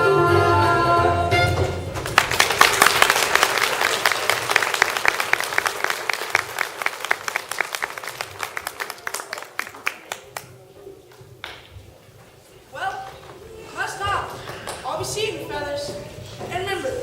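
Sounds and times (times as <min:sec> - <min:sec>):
audience applauding: 0:02.0 - 0:11.7.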